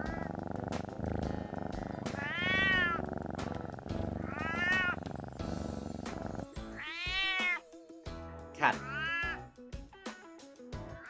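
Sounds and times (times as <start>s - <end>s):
cat meowing: 2.1s - 3.1s, 4.2s - 5.0s, 6.8s - 7.6s, 8.8s - 9.5s.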